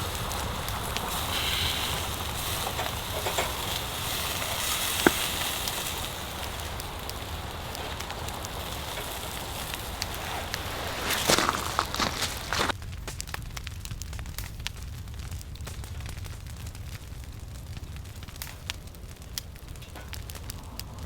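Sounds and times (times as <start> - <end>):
sharp pop of fire: 0.0 - 13.4
firewood burning and crackling: 0.0 - 21.0.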